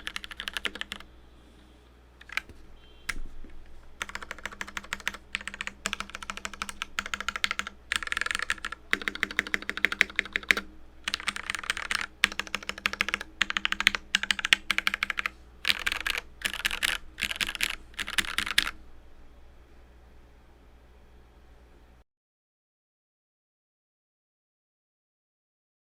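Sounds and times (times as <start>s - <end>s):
mechanical keyboard typing: 0.0s - 1.1s, 2.2s - 18.8s.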